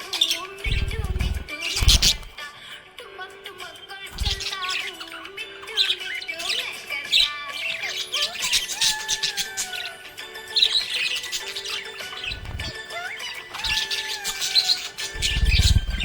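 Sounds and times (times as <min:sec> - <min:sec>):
budgerigars chirping and squawking: 0:00.0 - 0:02.9, 0:04.1 - 0:16.0
background music: 0:00.0 - 0:16.0.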